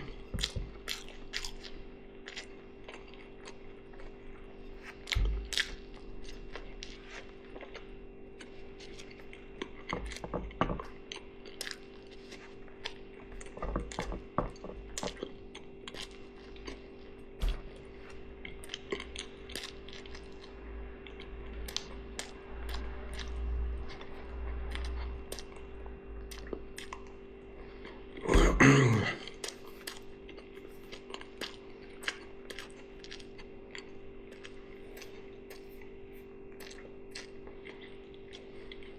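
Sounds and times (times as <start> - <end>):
chewing: 0.0 - 38.9
steady low hum: 0.0 - 38.9
loud belch: 28.3 - 29.2.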